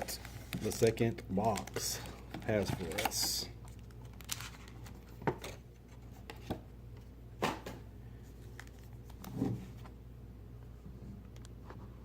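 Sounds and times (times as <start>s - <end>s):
card packs crinkling: 0.0s - 5.6s
low steady hum: 0.0s - 12.0s.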